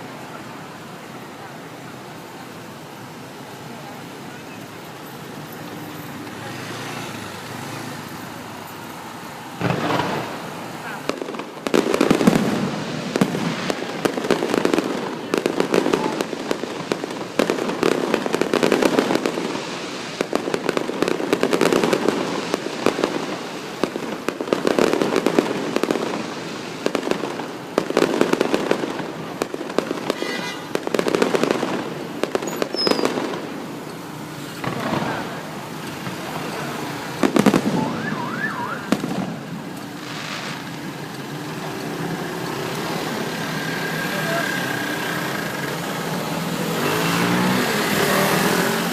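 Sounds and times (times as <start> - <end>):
fireworks booming and crackling: 0.0 - 48.9
rising firework whistles: 9.1 - 14.2, 31.6 - 33.6, 34.4 - 40.9.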